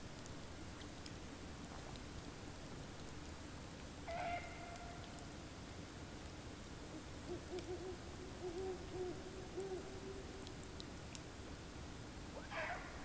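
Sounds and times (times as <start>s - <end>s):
low steady animal call: 6.9s - 10.5s, 12.4s - 13.0s.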